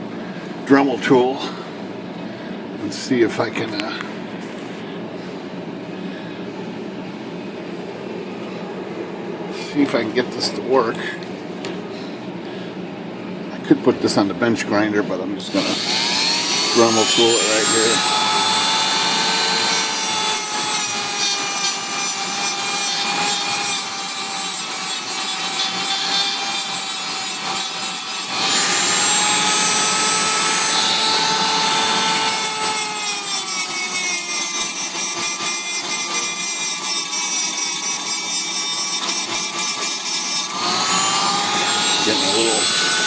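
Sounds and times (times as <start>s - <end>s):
rotary tool grinding metal: 15.5s - 43.0s.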